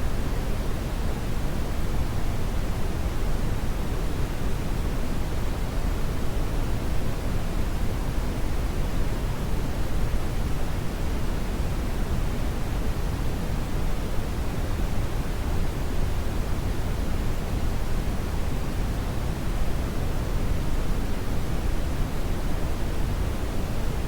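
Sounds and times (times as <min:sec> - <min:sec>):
brown noise rumbling hiss: 0:00.0 - 0:24.0.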